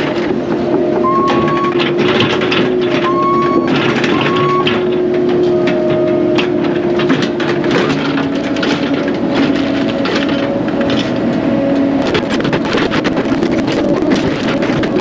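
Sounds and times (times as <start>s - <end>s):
diesel machinery running: 0.0s - 15.0s
short cracks: 12.0s - 15.0s.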